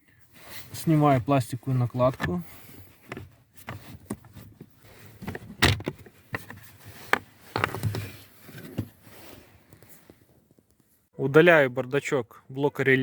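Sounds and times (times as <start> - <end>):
plastic clatter: 3.1 - 8.9.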